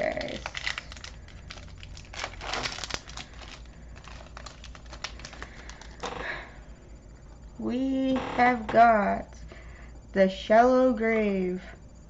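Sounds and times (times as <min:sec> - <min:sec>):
foil pack crinkling and tearing: 0:00.0 - 0:06.3.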